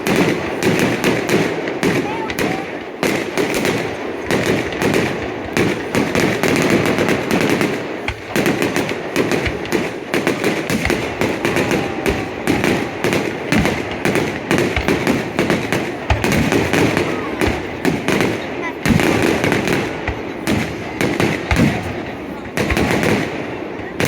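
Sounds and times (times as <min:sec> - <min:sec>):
deep fireworks booms: 0:00.0 - 0:24.0
fireworks crackling bangs: 0:00.0 - 0:24.0.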